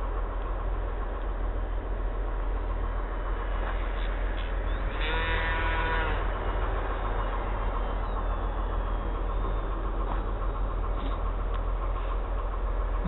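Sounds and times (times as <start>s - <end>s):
distant model plane motor whine: 3.2s - 13.0s.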